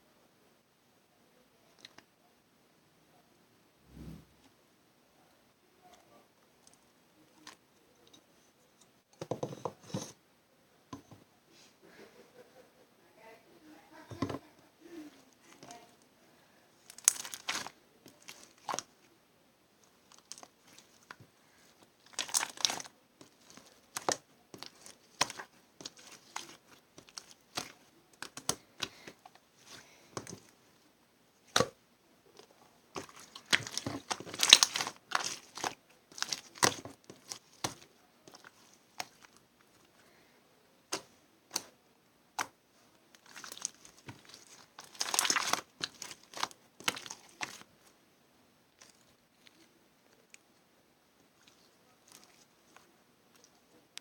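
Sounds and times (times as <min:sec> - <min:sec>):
crinkling and rustling handling: 0:13.9 - 0:16.1, 0:16.8 - 0:19.2, 0:19.8 - 0:48.0, 0:48.7 - 0:54.0.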